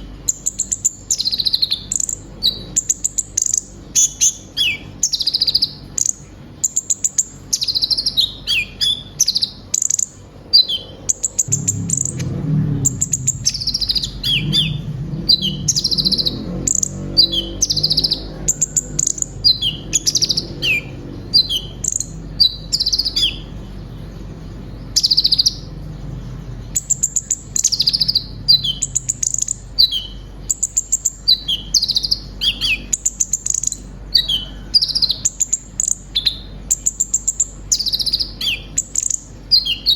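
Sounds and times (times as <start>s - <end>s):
bird singing with chirps and trills: 0.0s - 39.9s.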